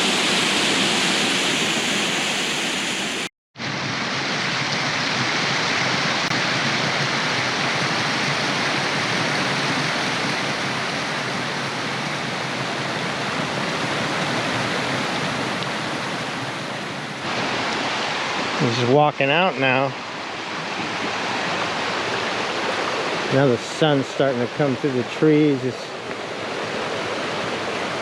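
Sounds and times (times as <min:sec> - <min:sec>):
creek water rushing: 0:00.0 - 0:28.0.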